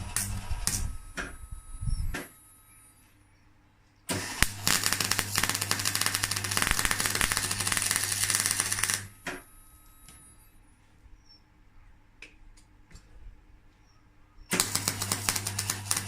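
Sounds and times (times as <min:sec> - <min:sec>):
welder arc crackling: 0:00.0 - 0:01.3, 0:04.1 - 0:09.2, 0:14.5 - 0:16.0.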